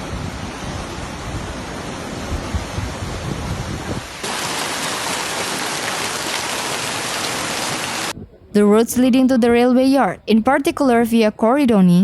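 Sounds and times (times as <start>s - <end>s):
rushing storm noise: 0.0s - 8.2s
wind gusting on microphone: 0.0s - 10.2s.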